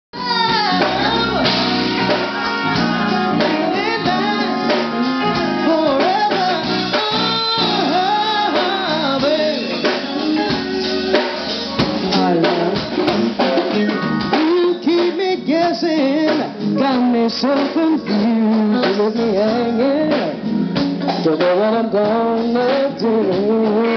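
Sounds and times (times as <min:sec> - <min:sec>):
woman singing: 0:00.2 - 0:11.4, 0:12.0 - 0:13.2
jazz-funk band playing: 0:00.2 - 0:23.9.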